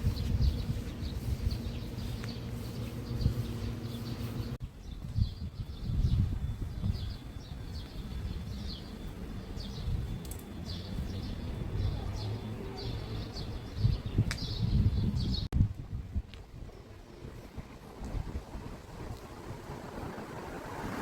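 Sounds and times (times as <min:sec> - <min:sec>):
bird chirping: 0:00.0 - 0:15.5
low continual rumble: 0:00.0 - 0:21.0.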